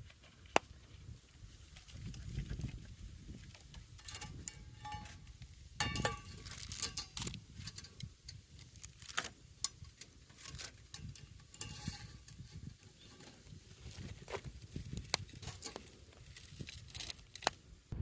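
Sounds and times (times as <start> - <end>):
steady low rumble: 17.7 - 18.0.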